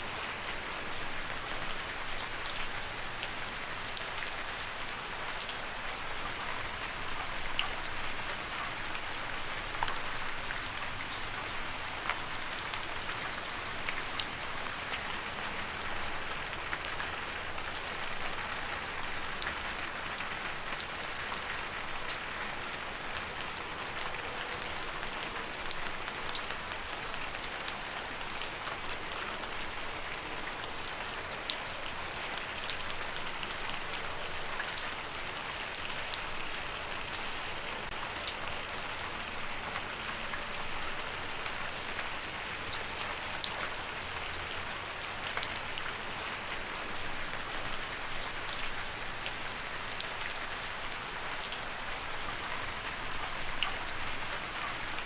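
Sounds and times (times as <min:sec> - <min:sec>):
steady rain falling: 0:00.0 - 0:55.0
raindrops ticking on a surface: 0:00.1 - 0:55.0.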